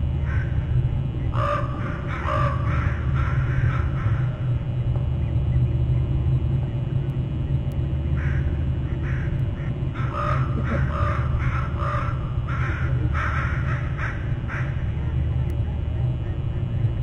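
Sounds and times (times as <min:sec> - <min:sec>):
steady low rumble: 0:00.0 - 0:17.0
crows cawing: 0:00.2 - 0:04.6, 0:08.1 - 0:15.0.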